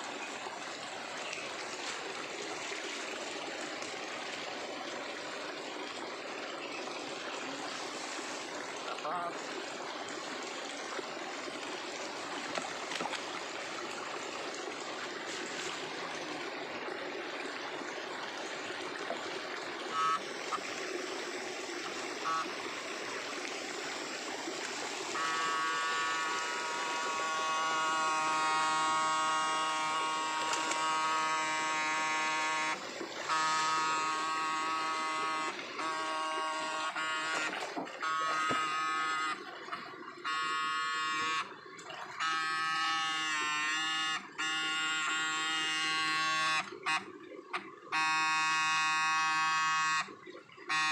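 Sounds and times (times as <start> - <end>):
river water running: 0.0 - 50.9.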